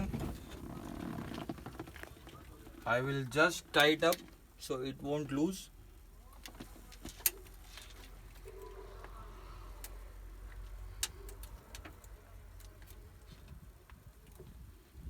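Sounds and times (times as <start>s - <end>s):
handling noise of wiring: 0.0s - 4.5s, 6.3s - 9.2s.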